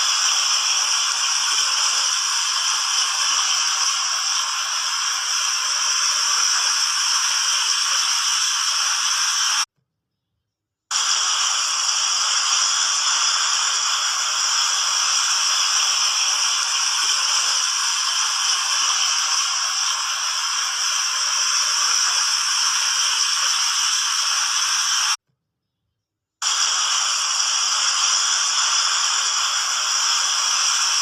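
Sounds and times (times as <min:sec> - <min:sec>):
water fountain splashing: 0:00.0 - 0:09.6, 0:11.0 - 0:25.2.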